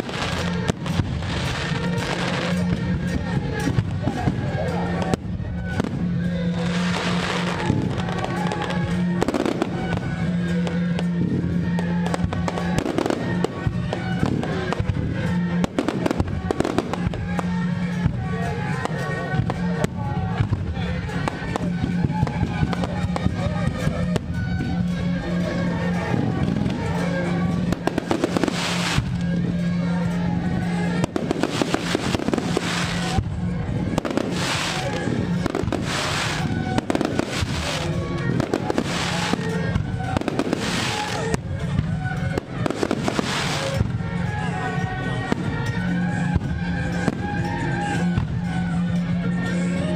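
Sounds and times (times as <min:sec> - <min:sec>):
fireworks bangs and crackles: 0:00.0 - 0:49.9
music: 0:00.0 - 0:49.9
fireworks hissing: 0:05.6 - 0:19.7, 0:26.7 - 0:44.6.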